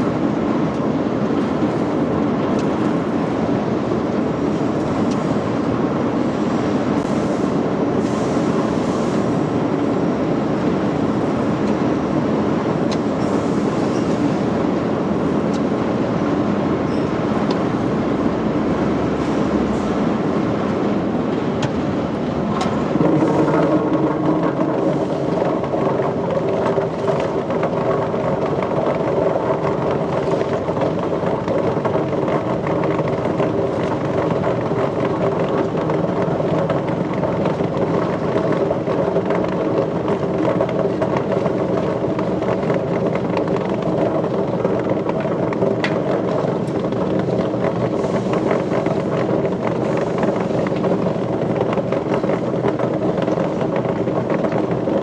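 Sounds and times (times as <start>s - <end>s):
machinery droning: 21.0s - 36.6s.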